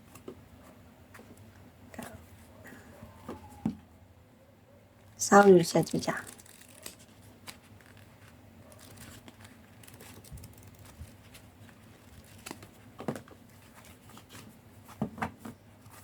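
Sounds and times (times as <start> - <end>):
cards rustling and tapping: 5.5 - 16.0.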